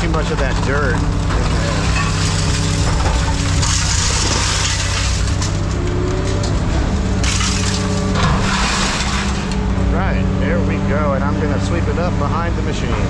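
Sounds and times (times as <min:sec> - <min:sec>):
scraping and crunching of scrap metal: 0:00.0 - 0:09.9
heavy machine engine running: 0:00.0 - 0:13.0.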